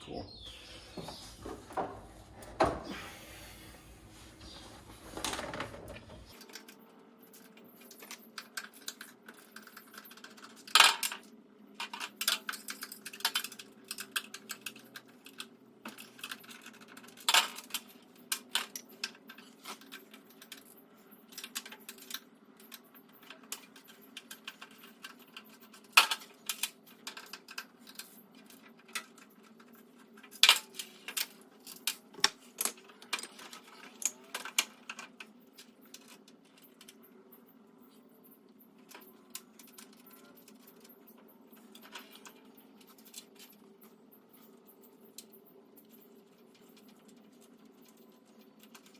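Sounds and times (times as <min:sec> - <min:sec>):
faint steady hum: 0:00.0 - 0:10.3.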